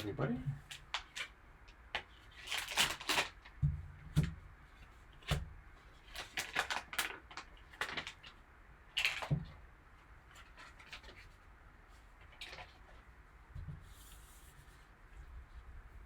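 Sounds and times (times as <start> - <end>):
packaging rustling and crinkling: 0.0 - 4.4, 5.2 - 9.6, 10.3 - 13.1.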